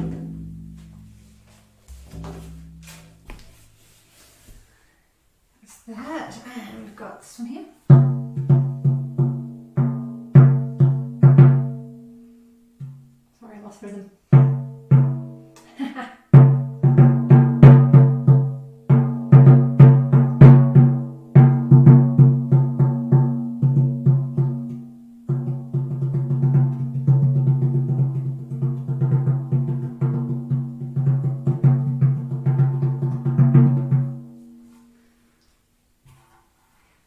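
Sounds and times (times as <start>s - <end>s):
hand drum strokes: 0.0s - 4.6s.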